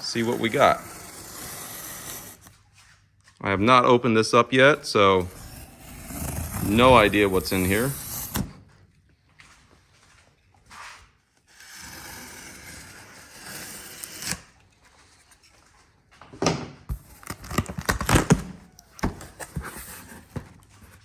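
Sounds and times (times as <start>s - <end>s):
packing tape ripping: 0.0s - 2.5s, 16.9s - 18.6s
packing material rustling: 16.9s - 18.8s.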